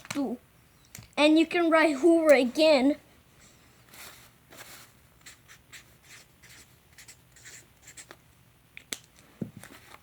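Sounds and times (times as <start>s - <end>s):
pen scratching on paper: 5.2s - 8.1s.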